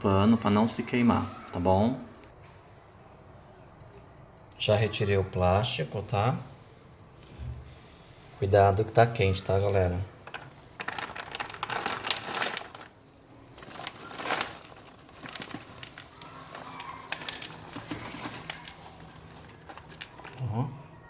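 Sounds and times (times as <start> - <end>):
popcorn crinkling and rustling in bowl: 8.4 - 21.0.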